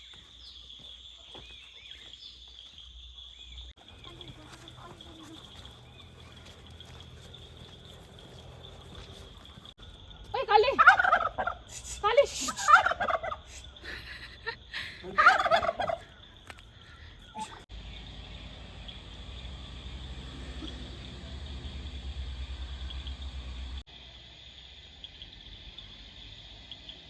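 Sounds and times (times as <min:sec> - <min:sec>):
fowl calling: 0:10.3 - 0:14.0, 0:15.0 - 0:17.6.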